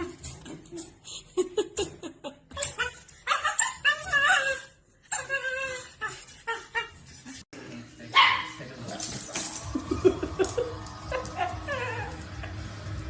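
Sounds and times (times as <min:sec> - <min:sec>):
dog crying: 0:02.5 - 0:07.0, 0:11.1 - 0:12.4.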